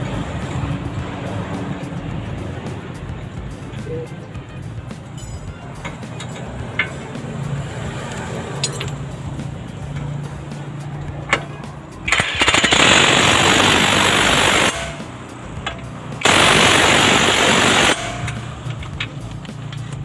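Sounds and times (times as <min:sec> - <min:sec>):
pneumatic impact wrench: 0:12.1 - 0:20.0.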